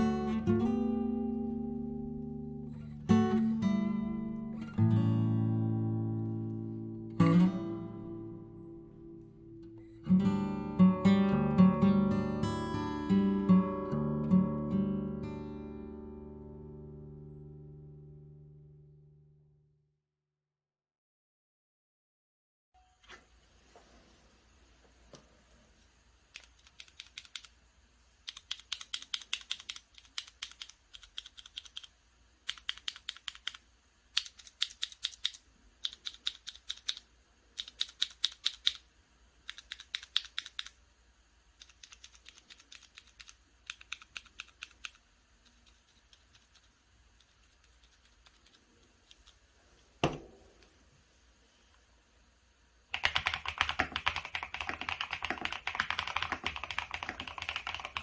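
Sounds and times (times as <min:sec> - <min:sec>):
mechanical keyboard typing: 0:26.3 - 0:27.6, 0:28.2 - 0:38.8, 0:39.4 - 0:40.8, 0:41.6 - 0:49.4, 0:52.9 - 0:58.0.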